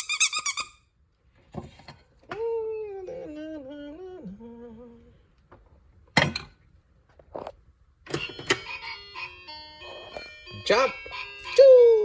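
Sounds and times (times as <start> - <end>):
person humming a tune: 2.3 - 5.2.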